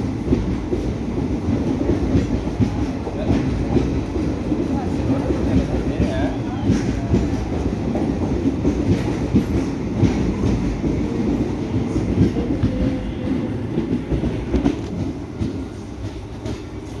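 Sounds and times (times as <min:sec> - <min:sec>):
train wheels clattering over rail joints: 0:00.1 - 0:17.0.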